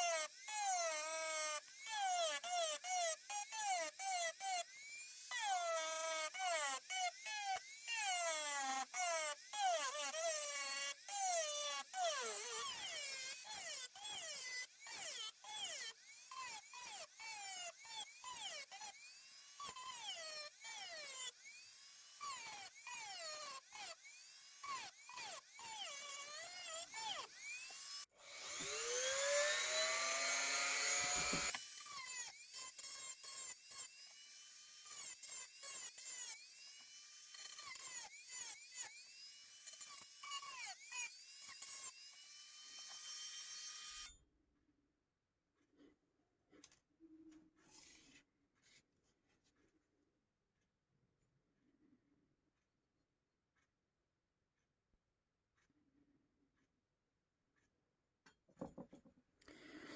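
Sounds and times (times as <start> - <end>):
rotary tool cutting metal: 0.0 - 44.2.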